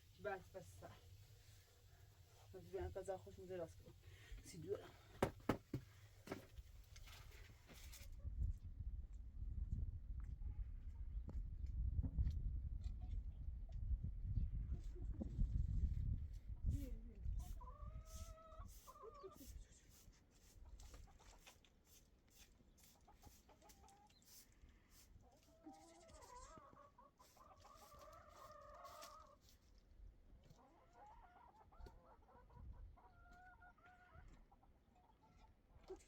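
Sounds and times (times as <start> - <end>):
chickens clucking: 17.6 - 19.4, 23.0 - 24.2, 25.2 - 29.4, 30.5 - 36.0.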